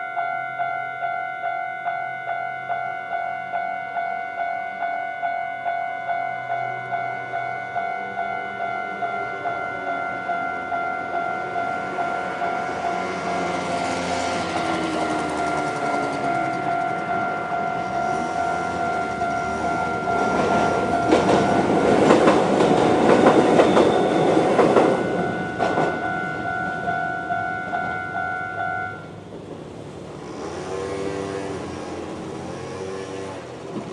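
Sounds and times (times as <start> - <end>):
level-crossing alarm ringing: 0.0 - 29.2
train wheels clattering over rail joints: 12.3 - 28.0.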